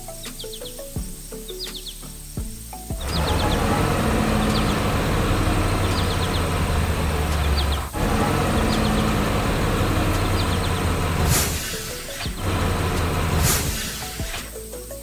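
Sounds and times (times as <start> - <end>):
bird chirps: 0.2 - 0.8, 1.5 - 2.1, 3.0 - 14.5
diesel engine droning: 3.0 - 14.5.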